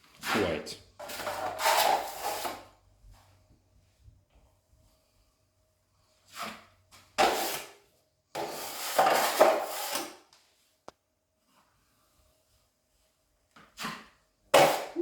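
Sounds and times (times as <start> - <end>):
drywall knife scraping compound: 0.0 - 2.8, 6.1 - 10.3, 13.6 - 15.0.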